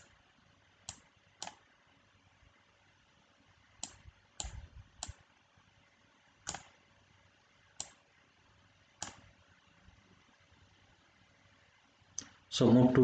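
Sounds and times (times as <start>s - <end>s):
faint room noise: 0.0s - 13.0s
computer mouse clicks: 0.8s - 1.6s, 3.8s - 5.2s, 6.4s - 6.8s, 7.8s - 8.0s, 9.0s - 9.3s.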